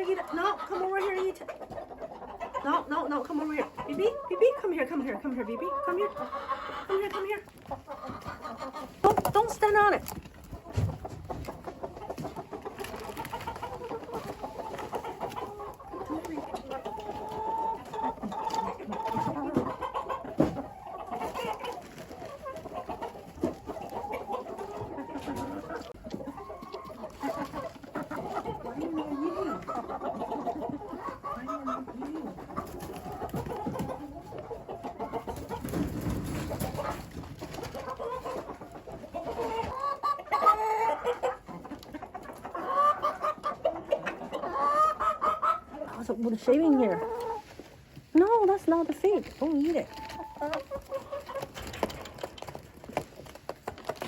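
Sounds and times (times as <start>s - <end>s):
chickens clucking: 0.0s - 54.0s.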